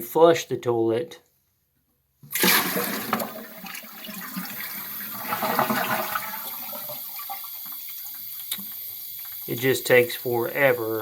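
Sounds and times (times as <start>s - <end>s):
tank refilling: 2.3s - 11.0s
toilet flushing: 2.3s - 11.0s
water gurgling: 2.4s - 11.0s.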